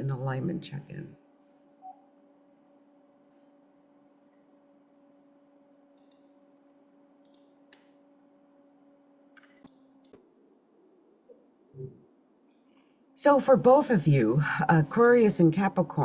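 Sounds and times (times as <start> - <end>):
faint steady hum: 0.0 - 16.0
soft clicks: 6.0 - 7.9.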